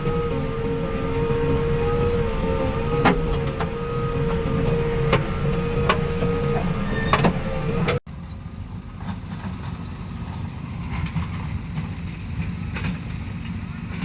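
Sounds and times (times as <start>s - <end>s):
diesel engine running: 0.0s - 14.0s.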